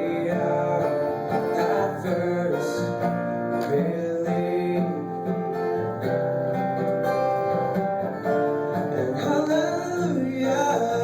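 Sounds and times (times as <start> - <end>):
man singing a hymn: 0.0 - 5.3, 8.9 - 11.0
strummed acoustic guitar: 0.0 - 11.0.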